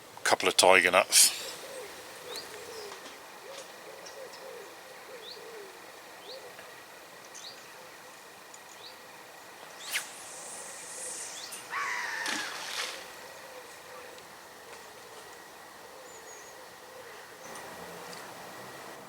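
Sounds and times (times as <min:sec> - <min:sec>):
small birds chirping: 0:01.0 - 0:18.3
lower bird calls: 0:01.1 - 0:18.8
whirring scraping sound: 0:09.8 - 0:11.7
hissing rush: 0:09.8 - 0:13.2.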